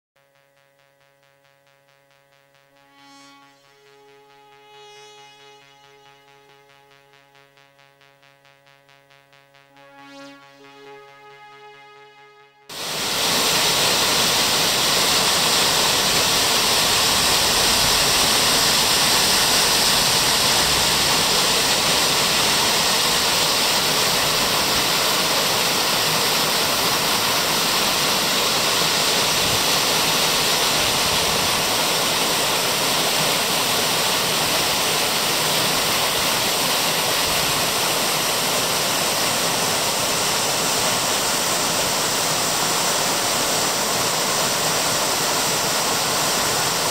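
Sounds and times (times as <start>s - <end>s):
waterfall rushing: 12.7s - 46.9s.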